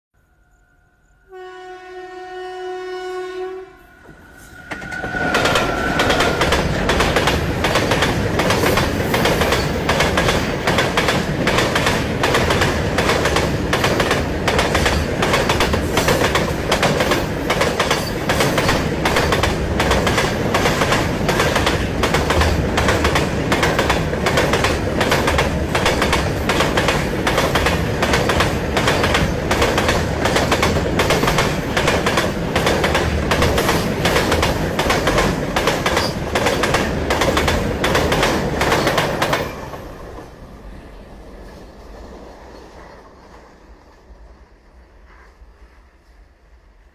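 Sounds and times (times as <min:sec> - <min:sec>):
train horn blast: 0:00.8 - 0:06.7
train wheels clattering: 0:04.1 - 0:40.2.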